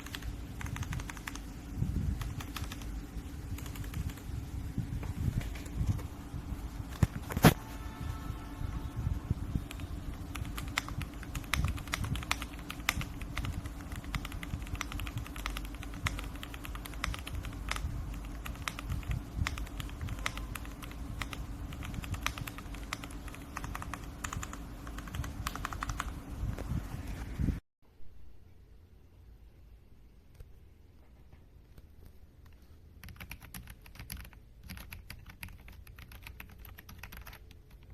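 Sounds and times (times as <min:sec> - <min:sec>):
low steady hum: 0:00.0 - 0:37.9
mechanical keyboard key clacks: 0:09.7 - 0:26.1.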